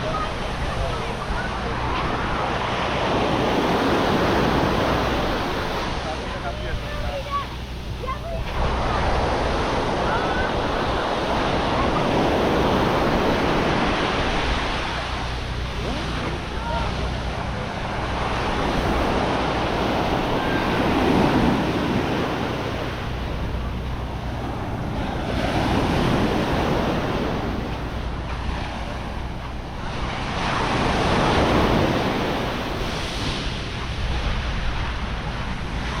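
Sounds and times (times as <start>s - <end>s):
waves washing onto beach: 0.0s - 36.0s
wind on microphone: 0.0s - 36.0s.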